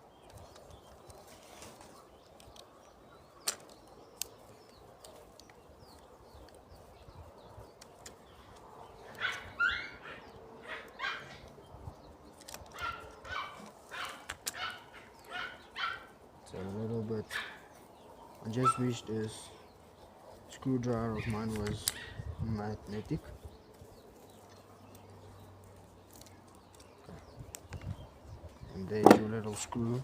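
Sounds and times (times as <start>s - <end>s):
small sharp clicks: 3.4s - 6.6s
dog barking: 9.2s - 11.4s, 12.8s - 16.1s.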